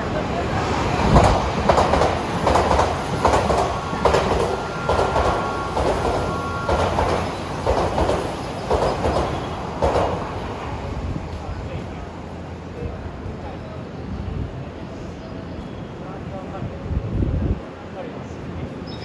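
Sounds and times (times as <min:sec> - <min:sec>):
train wheels clattering: 0:00.9 - 0:11.5.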